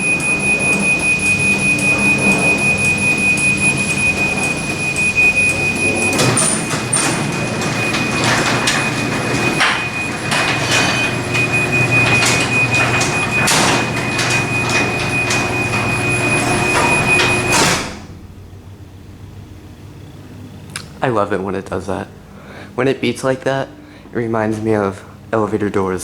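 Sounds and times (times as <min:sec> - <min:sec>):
garage door rattling on tracks: 0:00.0 - 0:18.5
garage door opener motor hum: 0:00.0 - 0:20.7.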